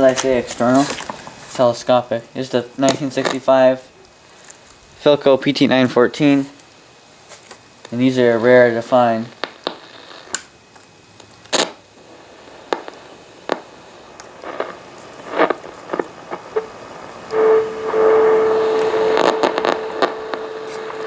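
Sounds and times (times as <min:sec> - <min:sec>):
shortwave static: 0:00.0 - 0:21.0
steady radio tone: 0:12.0 - 0:21.0.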